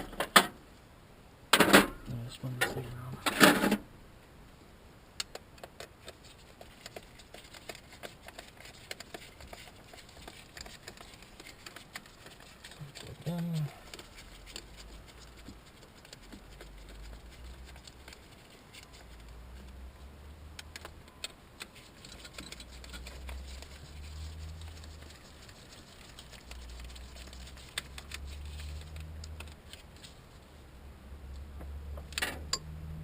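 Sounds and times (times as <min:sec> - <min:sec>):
hand tools clicking and scraping: 0:05.2 - 0:19.8, 0:20.6 - 0:30.2.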